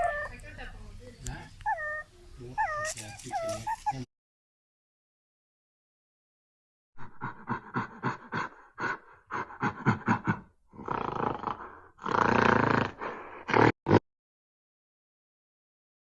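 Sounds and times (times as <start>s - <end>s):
big cat roaring and grunting: 10.7s - 13.8s.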